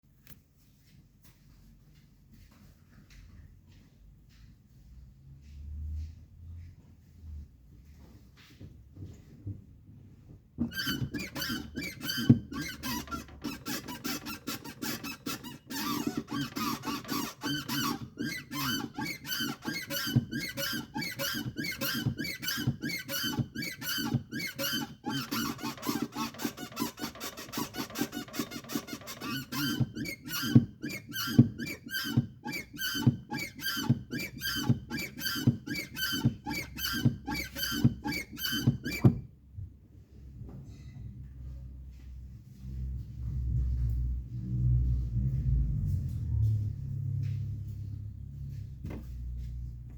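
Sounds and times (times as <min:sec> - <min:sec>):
clutch pedal squeaking: 0:10.6 - 0:39.3.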